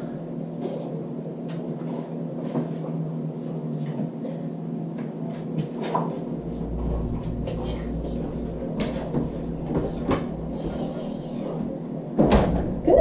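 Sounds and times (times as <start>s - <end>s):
steady low hum: 0.0s - 13.0s
low rumble: 6.2s - 13.0s.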